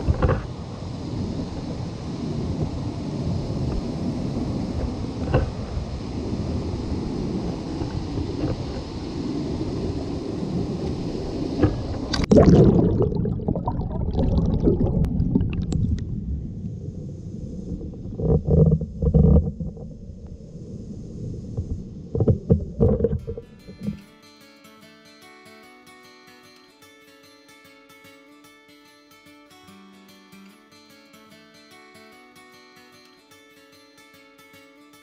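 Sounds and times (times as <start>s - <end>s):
stream water rushing: 0.0s - 16.1s
muffled underwater sound: 7.7s - 24.0s
loud splash: 11.7s - 15.9s
low thumps: 21.5s - 24.0s.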